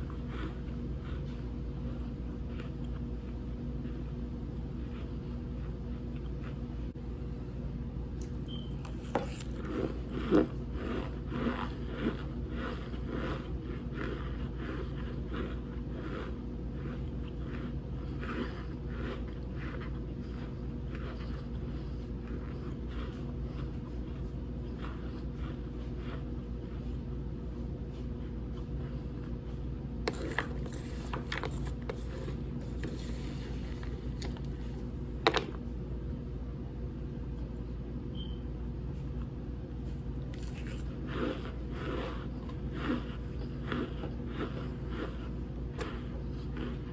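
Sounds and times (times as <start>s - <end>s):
low steady hum: 0.0s - 46.9s
crunching cornstarch: 8.2s - 21.4s, 30.1s - 35.6s, 40.1s - 46.9s
chewing: 8.2s - 27.0s, 39.8s - 46.9s
cornstarch crunching: 30.1s - 35.6s, 40.1s - 46.9s.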